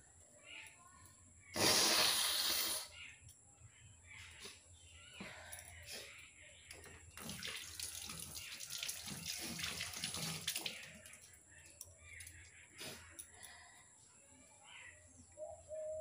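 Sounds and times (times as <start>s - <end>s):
person blowing nose: 1.6s - 2.9s.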